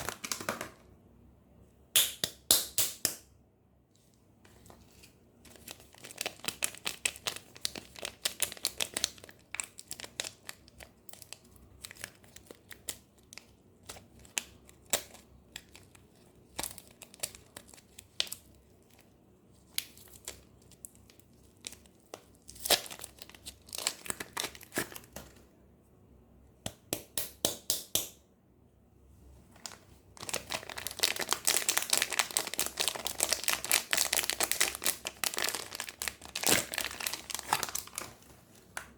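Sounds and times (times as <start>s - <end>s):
soap wrapper crinkling and tearing: 5.0s - 25.3s, 29.6s - 38.2s.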